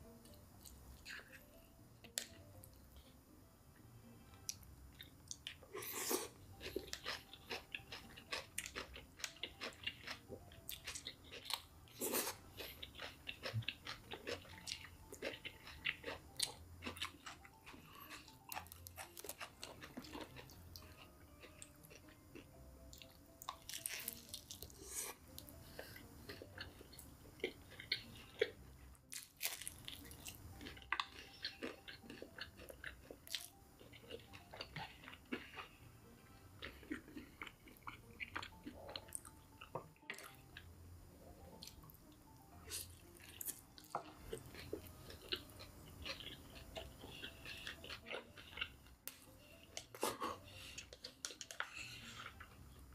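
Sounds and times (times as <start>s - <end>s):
crunching fried chicken: 5.0s - 22.5s, 23.5s - 25.5s, 26.3s - 35.7s.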